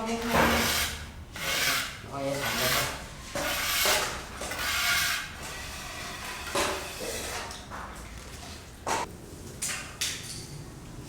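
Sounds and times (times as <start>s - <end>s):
rubbing or scraping strokes: 0.2s - 7.4s.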